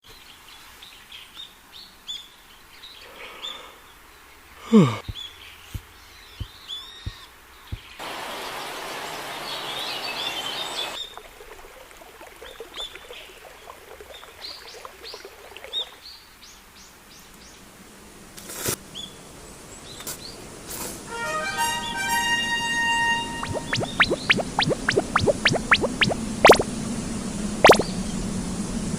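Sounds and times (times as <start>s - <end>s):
small birds chirping: 5.0s - 11.0s, 23.4s - 26.6s, 27.6s - 27.9s.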